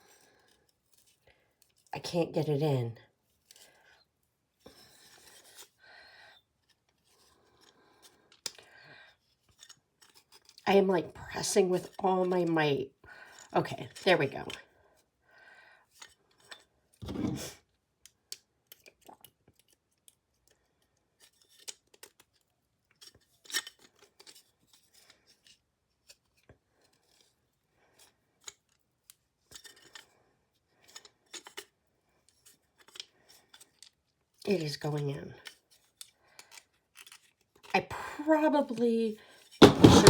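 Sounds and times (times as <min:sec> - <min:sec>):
screw twisting into wood: 0:39.6 - 0:40.0
thump: 0:39.6 - 0:40.0.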